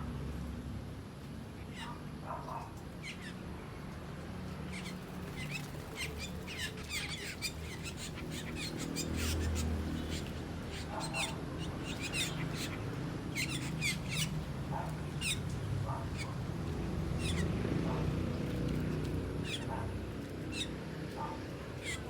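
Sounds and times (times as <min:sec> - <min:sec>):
starlings squeaky calls: 0:04.6 - 0:14.5, 0:15.1 - 0:16.5, 0:17.1 - 0:18.1, 0:19.4 - 0:22.0.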